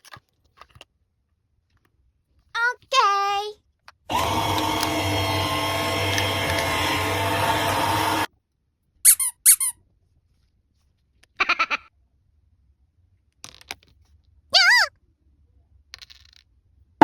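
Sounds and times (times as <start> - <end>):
toy machine whirring: 4.1 - 8.3.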